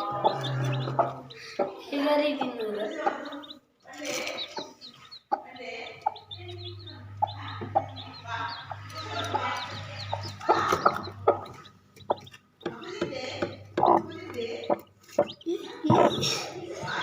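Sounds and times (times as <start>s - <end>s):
chickens clucking: 0.0s - 17.0s
chicks peeping: 0.0s - 17.0s
low steady hum: 5.6s - 12.7s.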